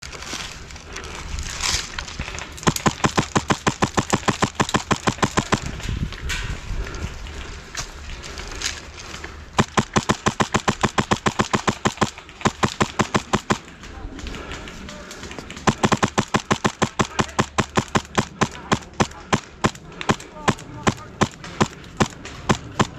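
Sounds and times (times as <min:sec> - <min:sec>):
airsoft gun firing: 0:02.6 - 0:05.8, 0:09.6 - 0:13.8, 0:15.6 - 0:22.9.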